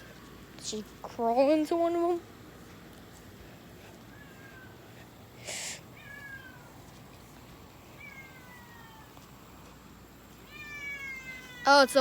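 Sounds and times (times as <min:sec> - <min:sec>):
burst of hissy noise: 0:05.4 - 0:05.9
cat meowing faintly: 0:08.0 - 0:09.2.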